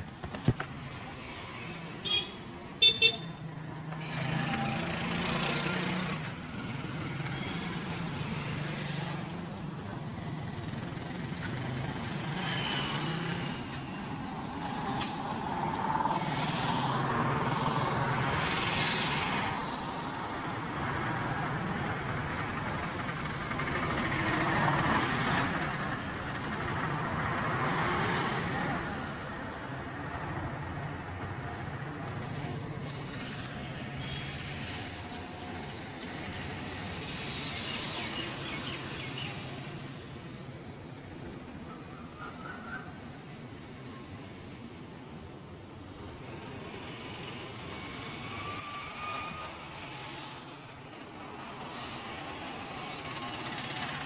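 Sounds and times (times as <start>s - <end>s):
street traffic: 0.0s - 54.0s
car horn toots: 2.0s - 3.3s.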